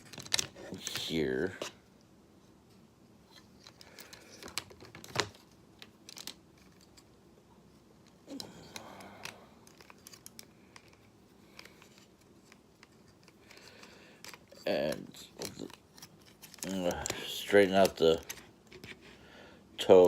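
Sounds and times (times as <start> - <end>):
plastic toy parts clicking: 3.6 - 7.1, 8.0 - 18.9.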